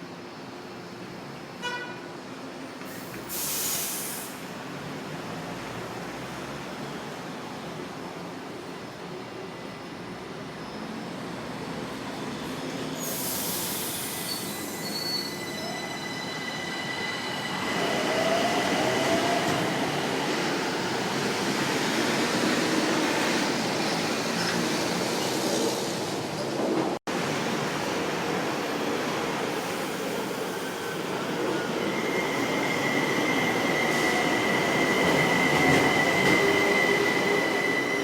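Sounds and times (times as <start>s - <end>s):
train wheels whining and squealing: 9.2s - 26.0s, 28.7s - 38.0s.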